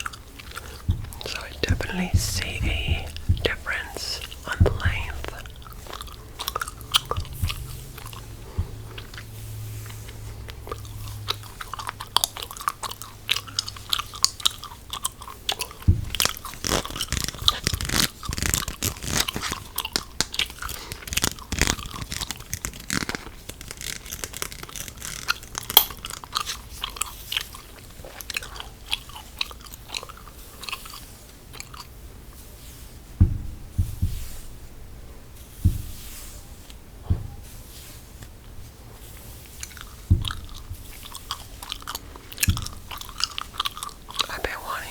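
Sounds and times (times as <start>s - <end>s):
gum chewing wet clicks: 0.0s - 32.0s, 39.2s - 44.9s
low thumps: 0.6s - 9.4s, 15.8s - 18.7s, 33.2s - 36.1s, 36.9s - 37.5s, 40.1s - 40.9s.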